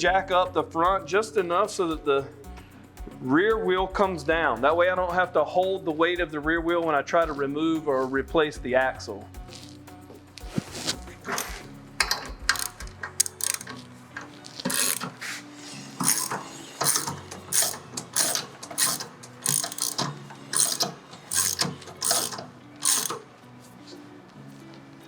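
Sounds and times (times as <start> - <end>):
jack ratchet clicking: 11.2 - 23.3.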